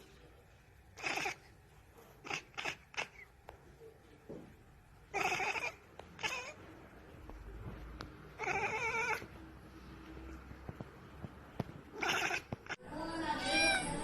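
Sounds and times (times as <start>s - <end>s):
cat meowing: 1.0s - 1.4s, 2.2s - 3.3s, 5.1s - 6.7s, 8.3s - 9.4s, 11.9s - 14.0s.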